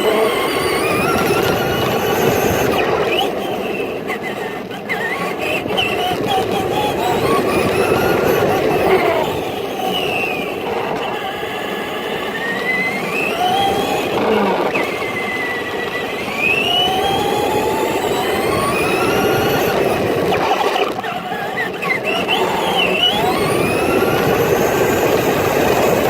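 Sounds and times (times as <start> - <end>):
toy truck motor whining: 0.0 - 26.0.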